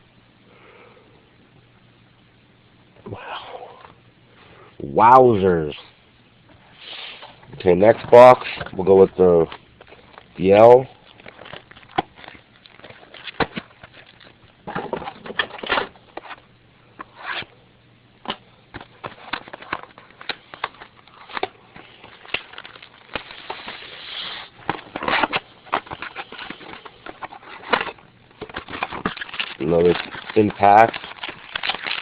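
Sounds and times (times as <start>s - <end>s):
wrapper crinkling: 7.8s - 16.4s, 18.9s - 32.0s.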